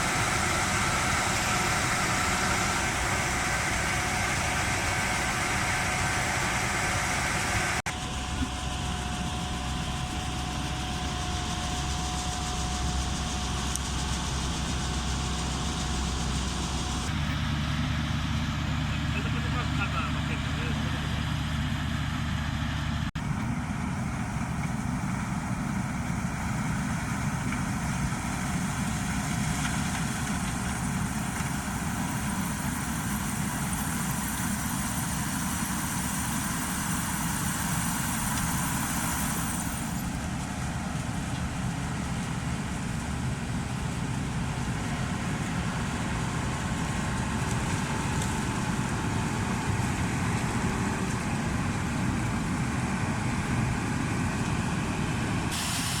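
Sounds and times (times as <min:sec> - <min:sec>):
combine harvester running: 0:00.0 - 0:56.0
high hiss: 0:30.8 - 0:40.2, 0:55.5 - 0:56.0.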